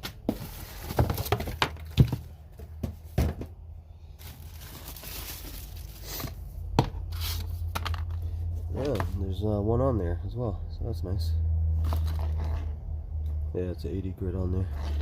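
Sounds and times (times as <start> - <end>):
packaging rustling: 0.2 - 2.2, 4.2 - 6.4
steady low hum: 2.2 - 15.0.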